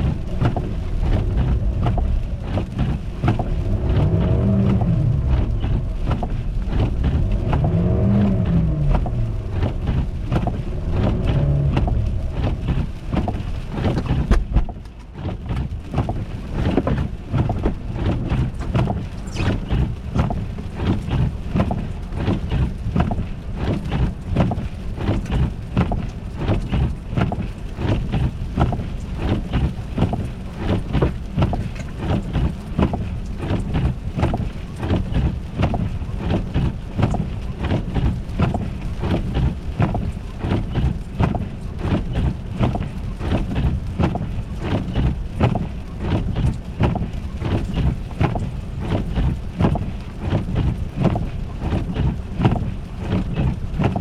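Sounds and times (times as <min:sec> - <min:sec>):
car engine running: 0:00.0 - 0:54.0.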